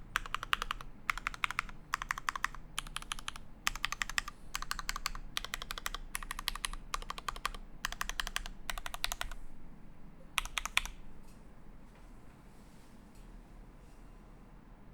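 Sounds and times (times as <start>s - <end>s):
typing on mechanical keyboard: 0.2s - 9.4s, 10.4s - 11.0s.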